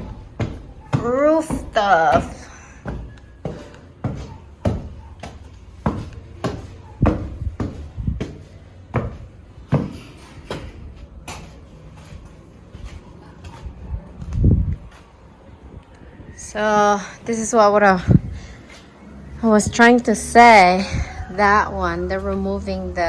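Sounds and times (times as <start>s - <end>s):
footsteps on hard floor: 0.0s - 15.1s.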